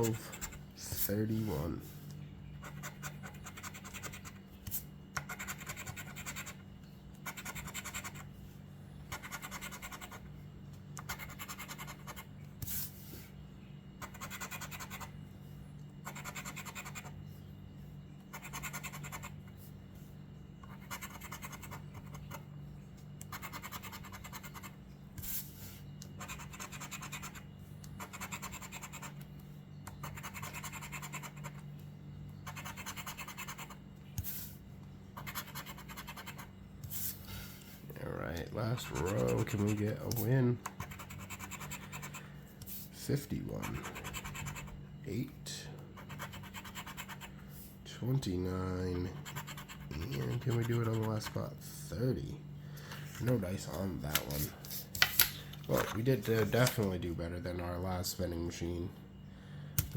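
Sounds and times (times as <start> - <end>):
scratching lottery ticket: 0.0 - 6.6, 7.2 - 8.3, 9.1 - 10.3, 11.0 - 13.2, 14.0 - 15.1, 16.0 - 17.2, 18.3 - 19.7, 20.6 - 22.4, 23.2 - 31.6, 32.4 - 34.6, 35.2 - 37.4, 38.6 - 45.2, 46.0 - 47.4, 48.9 - 51.4, 53.2 - 57.0
steady low hum: 0.0 - 59.9.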